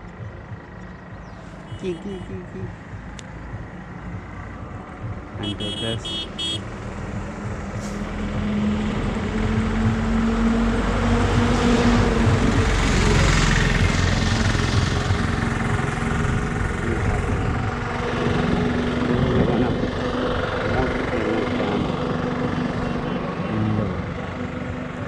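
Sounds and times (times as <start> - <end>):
motorbike engine running: 8.4 - 25.0.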